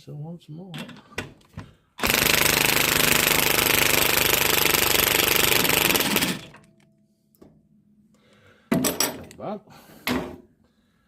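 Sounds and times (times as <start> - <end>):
impact wrench hammering: 2.0 - 6.6.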